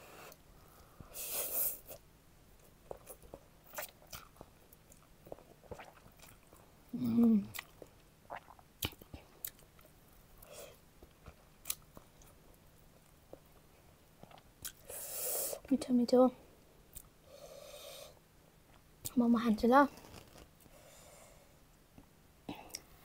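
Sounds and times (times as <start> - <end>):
hummed mm: 6.9 - 7.6.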